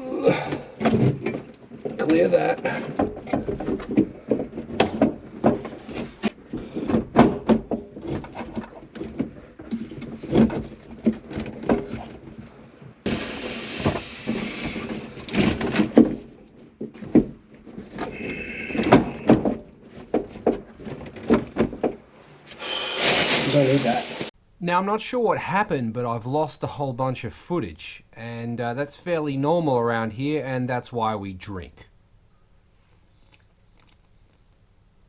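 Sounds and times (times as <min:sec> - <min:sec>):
hissing scraping noise: 0:22.5 - 0:24.3.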